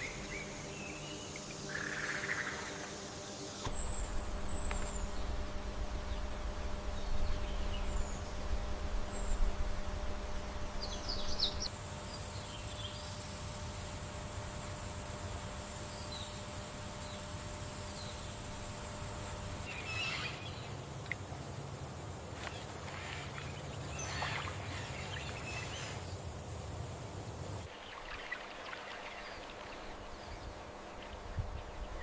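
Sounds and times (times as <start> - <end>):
low rumble and hiss: 0.0 - 32.0.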